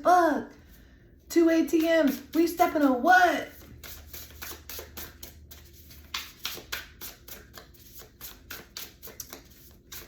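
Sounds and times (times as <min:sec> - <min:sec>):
cards being shuffled: 0:03.5 - 0:10.0.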